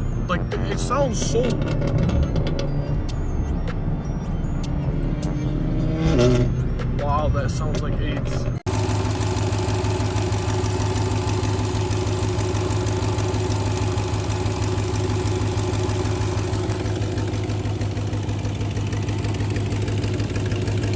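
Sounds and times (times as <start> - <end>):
car engine idling: 6.6 - 20.9.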